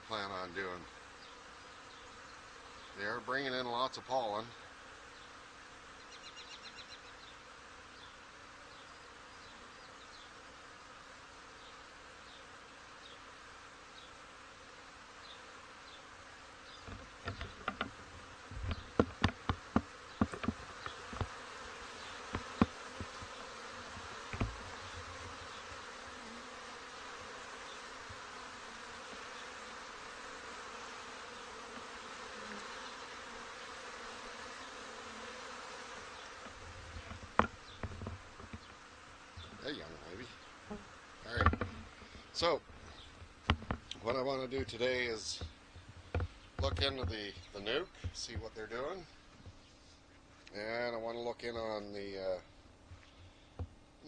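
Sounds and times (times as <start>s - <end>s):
honey bees buzzing: 0.0s - 54.0s
sharp knocks: 16.8s - 21.4s, 22.3s - 25.4s, 41.3s - 41.9s, 43.2s - 43.9s.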